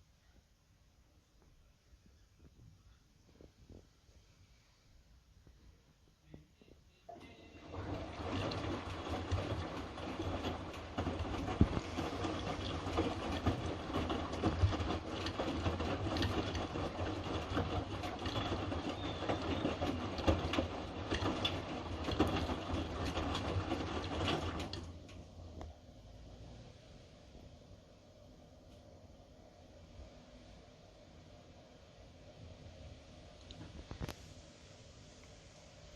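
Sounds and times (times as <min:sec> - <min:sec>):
washing machine drum tumbling: 0:07.1 - 0:25.7.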